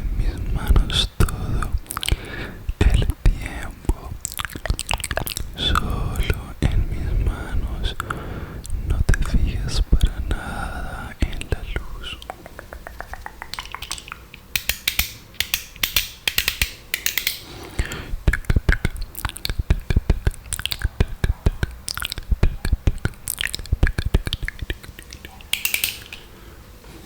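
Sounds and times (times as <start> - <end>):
breathy hisses: 0.1 - 4.2, 5.6 - 12.3, 17.4 - 18.3, 19.0 - 27.0
tongue clicks and lip smacks: 1.2 - 6.8, 7.9 - 10.2, 11.2 - 26.3.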